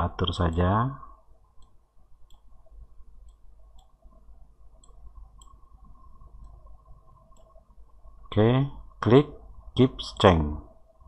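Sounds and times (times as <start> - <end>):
low room hum: 0.0 - 11.0
computer mouse clicking: 1.6 - 2.6, 3.2 - 4.2, 4.8 - 7.6.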